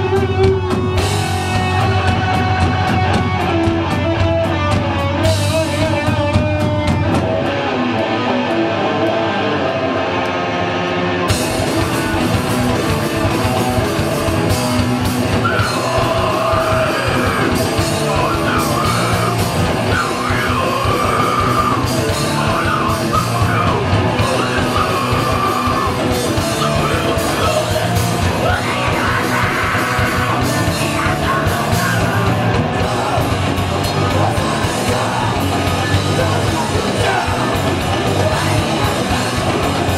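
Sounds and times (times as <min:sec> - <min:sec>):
drums and cymbals crashing: 0:00.0 - 0:07.7, 0:11.3 - 0:39.9
electric guitar: 0:00.0 - 0:39.9
shouted vocals: 0:11.6 - 0:39.9.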